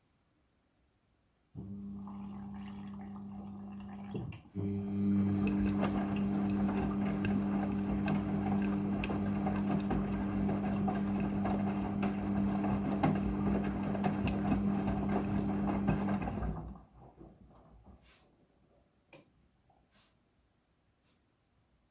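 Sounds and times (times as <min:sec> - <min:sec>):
washing machine humming: 0:01.6 - 0:17.6.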